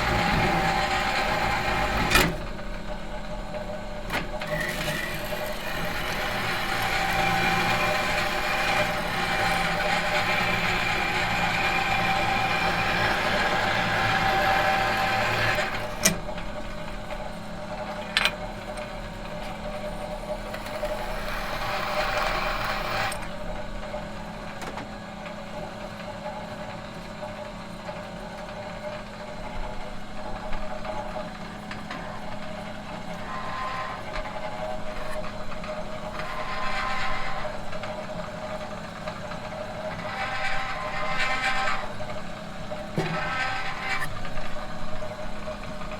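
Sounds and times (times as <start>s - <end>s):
workshop machine humming: 0.0s - 45.9s.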